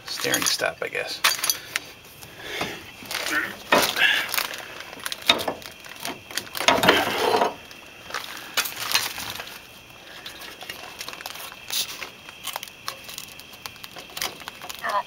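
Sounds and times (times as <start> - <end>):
metal parts clinking and knocking: 0.0 - 1.8, 3.1 - 7.6, 12.0 - 14.9
scraping rattle: 3.0 - 7.6.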